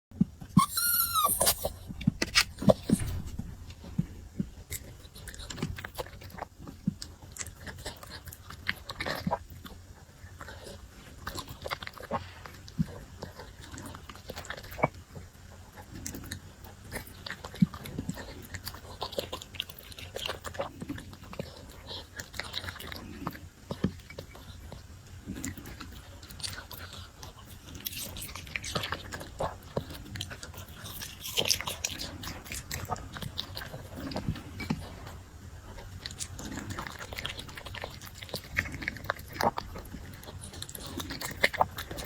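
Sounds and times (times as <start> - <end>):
puppy chewing and lapping: 0.2 - 42.0
puppy whining: 0.4 - 4.0.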